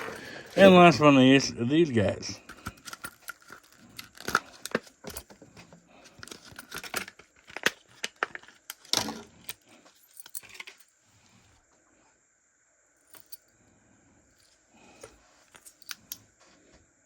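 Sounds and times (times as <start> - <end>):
plastic packaging crinkling and clicking: 2.4 - 9.6.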